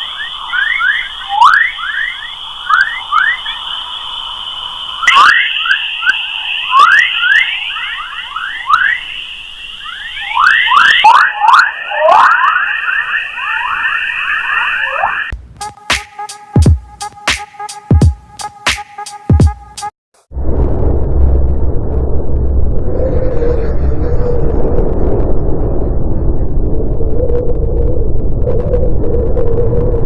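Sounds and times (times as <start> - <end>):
steady high whistling tone: 0.0 - 15.3.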